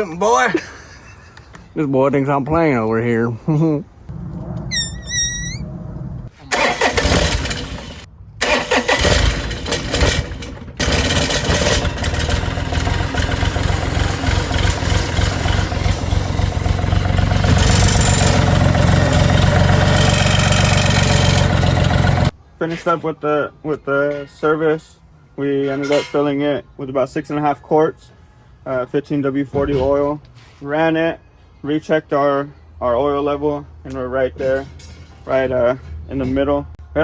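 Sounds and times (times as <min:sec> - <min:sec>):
diesel engine cranking and running: 0:06.5 - 0:22.4.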